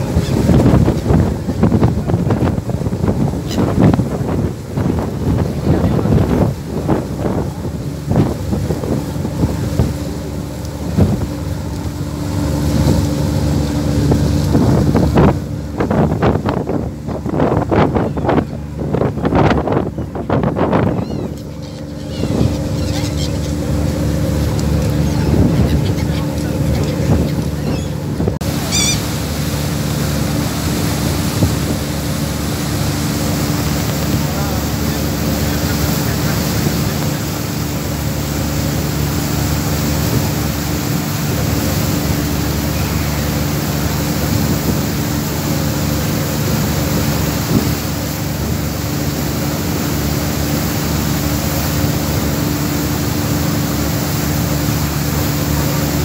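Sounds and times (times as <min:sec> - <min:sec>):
ferry engine humming: 0:00.0 - 0:56.0
wind buffeting microphone: 0:00.0 - 0:56.0
high wavering bird call: 0:28.6 - 0:29.1.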